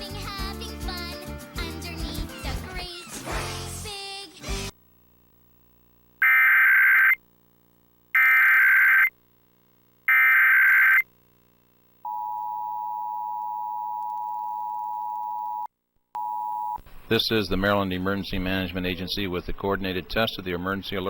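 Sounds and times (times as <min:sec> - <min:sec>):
data tone bursts: 0:06.2 - 0:07.2, 0:08.2 - 0:09.1, 0:10.1 - 0:11.0.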